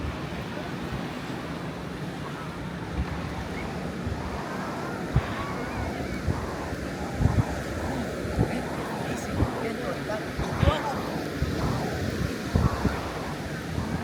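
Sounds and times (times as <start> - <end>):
surf on sandy beach: 0.0 - 14.0
wind buffeting microphone: 0.0 - 14.0.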